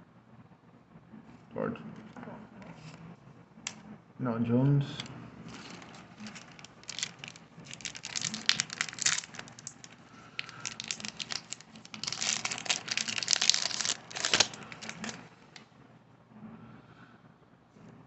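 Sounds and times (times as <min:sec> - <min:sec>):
foil wrapper crinkling: 0:05.5 - 0:15.6.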